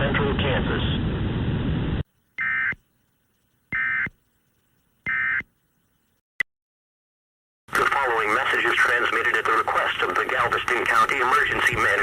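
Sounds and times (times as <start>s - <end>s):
shrill digital squawks: 2.4s - 2.8s, 3.7s - 4.2s, 5.0s - 5.5s.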